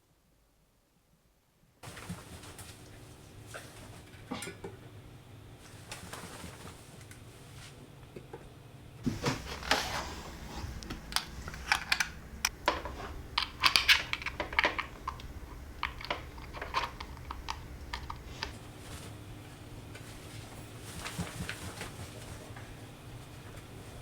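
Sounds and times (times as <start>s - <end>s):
packaging clicks and rustles: 9.1s - 19.1s.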